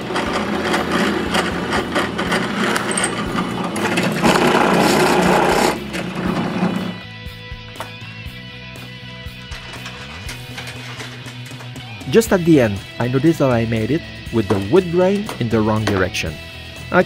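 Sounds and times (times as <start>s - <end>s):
power tool cutting wood: 0.0s - 7.0s.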